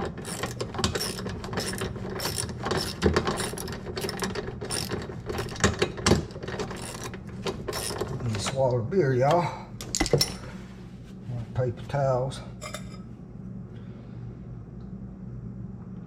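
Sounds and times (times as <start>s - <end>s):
ratchet clicking rapidly: 0.0s - 5.7s, 6.6s - 8.1s.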